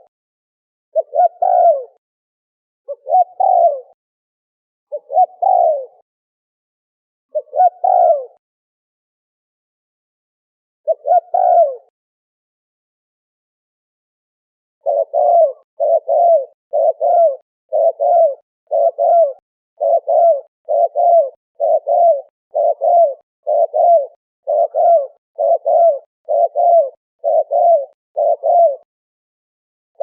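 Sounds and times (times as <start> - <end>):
dove cooing: 0.9 - 2.0, 2.9 - 4.0, 4.9 - 6.0, 7.3 - 8.4, 10.8 - 11.9, 14.8 - 28.9.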